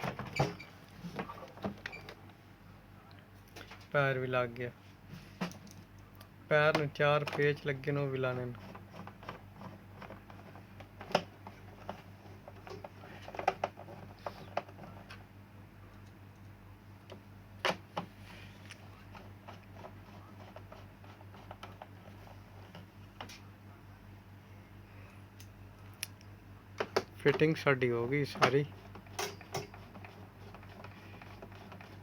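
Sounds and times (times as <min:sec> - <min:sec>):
low steady hum: 0:00.0 - 0:32.0.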